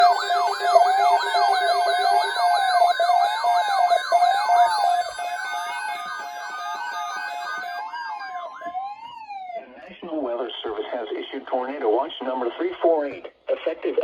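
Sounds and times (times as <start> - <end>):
electronic sirens wailing and yelping: 0.0 - 9.9.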